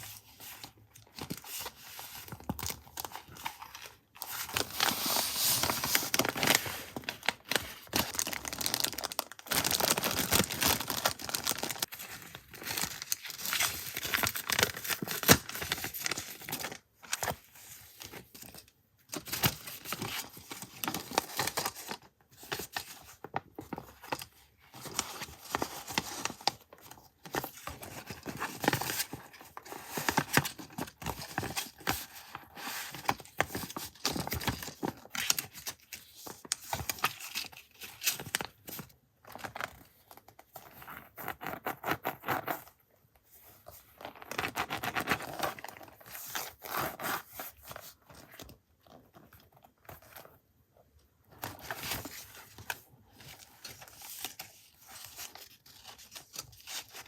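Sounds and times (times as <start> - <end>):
paper crinkling: 0.2 - 17.4.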